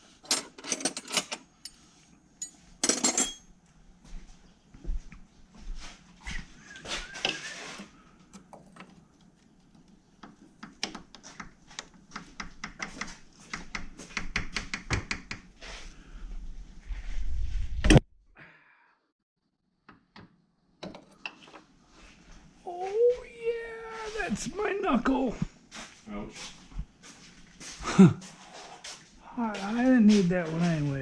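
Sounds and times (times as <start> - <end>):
hand tools clinking on metal: 2.4 - 3.5.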